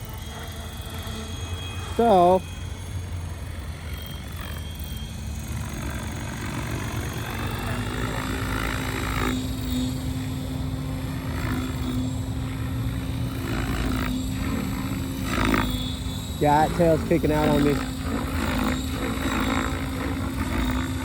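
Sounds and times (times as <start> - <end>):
rc helicopter rotor hum: 0.0 - 21.0.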